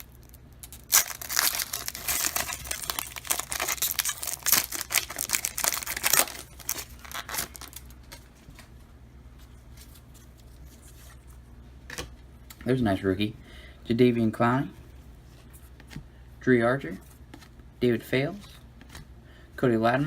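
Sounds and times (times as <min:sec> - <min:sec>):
wrapper crinkling: 0:00.0 - 0:08.2.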